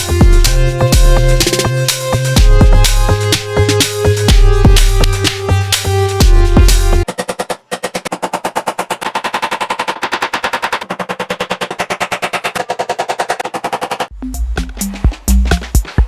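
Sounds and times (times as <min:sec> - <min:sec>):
stuttering synth chord: 0:00.0 - 0:07.0
heavy bass-drum beat: 0:00.0 - 0:07.1, 0:14.1 - 0:16.0.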